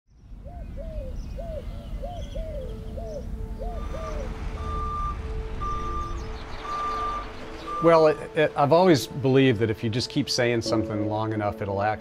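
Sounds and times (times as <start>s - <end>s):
low engine rumble: 0.1s - 10.7s
bird calling: 0.4s - 8.5s
reversing alarm beeping: 3.6s - 8.3s.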